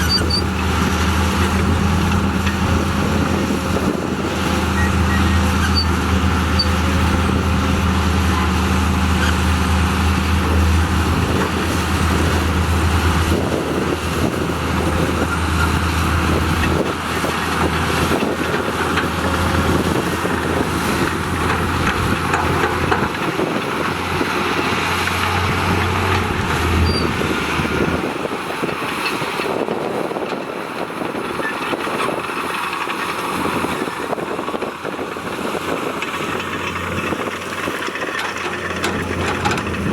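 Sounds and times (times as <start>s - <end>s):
heavy machinery diesel engines: 0.0s - 39.9s
mechanical noise: 4.4s - 7.3s.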